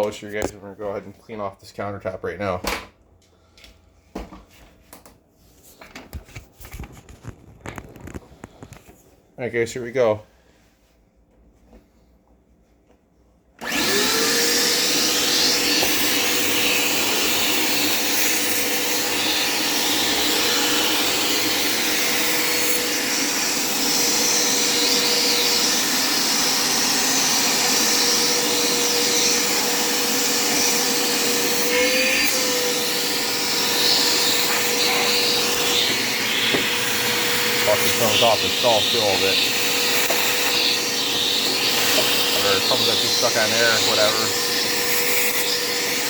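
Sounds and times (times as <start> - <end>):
vacuum cleaner motor whine: 13.6 - 46.0.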